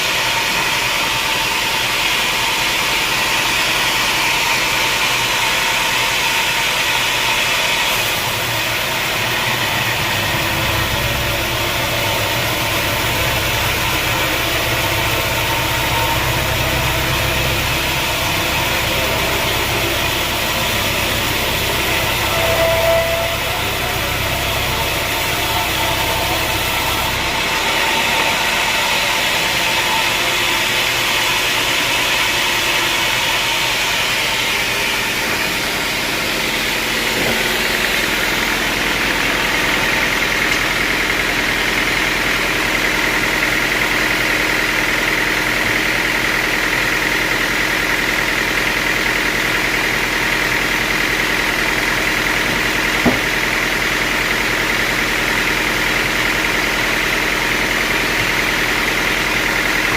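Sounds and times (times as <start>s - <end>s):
high steady whine: 0.0s - 59.9s
sawmill machinery drone: 0.0s - 59.9s
low rumble: 8.9s - 30.4s.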